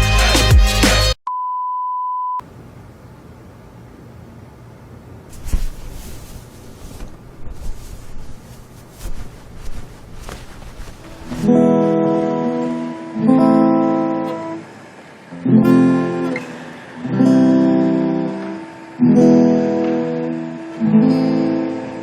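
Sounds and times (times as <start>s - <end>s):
guitar chords strummed: 11.3s - 22.0s.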